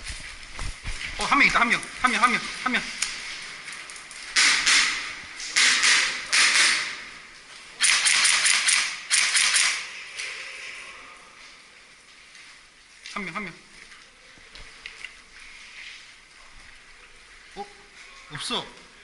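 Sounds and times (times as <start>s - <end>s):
airsoft gun firing bursts: 4.4s - 7.0s, 7.8s - 9.9s.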